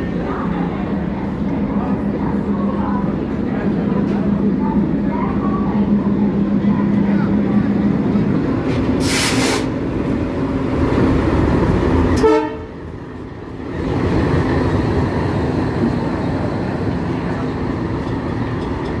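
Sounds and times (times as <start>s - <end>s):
train rumbling past: 0.0s - 19.0s
train horn toot: 12.2s - 12.8s.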